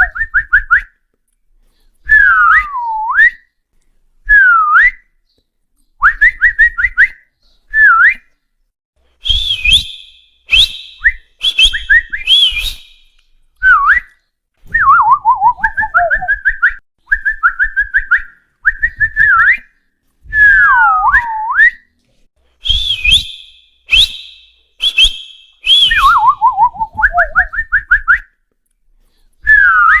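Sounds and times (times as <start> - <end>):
person whistling to call a dog: 0.0 - 0.9, 2.0 - 3.5, 4.3 - 5.1, 6.0 - 8.3, 9.2 - 19.7, 20.3 - 21.8, 22.6 - 28.3, 29.4 - 30.0.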